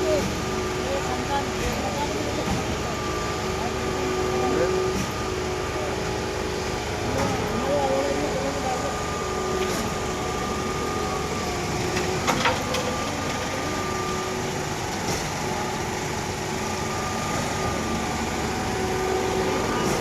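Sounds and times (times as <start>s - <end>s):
vehicle engine idling: 0.0s - 20.0s.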